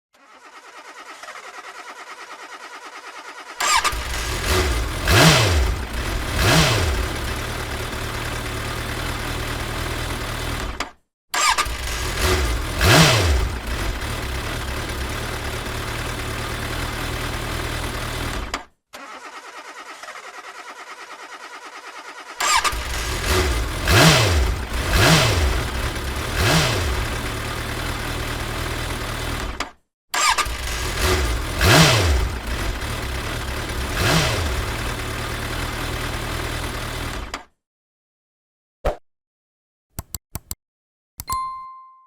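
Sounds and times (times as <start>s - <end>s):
car engine revving and idling: 3.8s - 10.7s, 11.6s - 18.4s, 22.5s - 29.5s, 30.4s - 37.2s.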